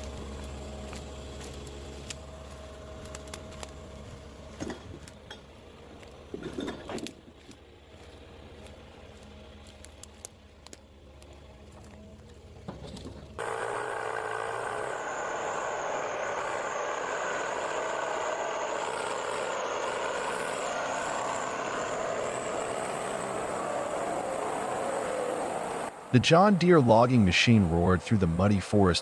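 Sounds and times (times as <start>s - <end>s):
heavy machine engine rumble: 0.0s - 29.0s
loud machine engine noise: 0.0s - 29.0s
high wavering whine: 13.4s - 28.9s.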